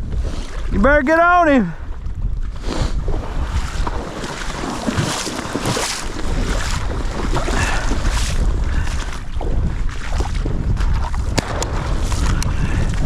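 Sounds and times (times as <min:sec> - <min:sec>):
water lapping and splashing: 0:00.0 - 0:13.0
wind gusting over microphone: 0:00.0 - 0:13.0.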